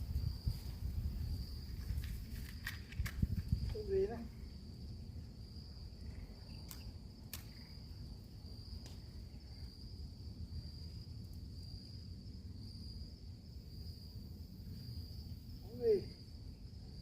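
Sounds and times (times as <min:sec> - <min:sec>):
wind buffeting microphone: 0:00.0 - 0:04.5
crickets chirping: 0:00.0 - 0:17.0.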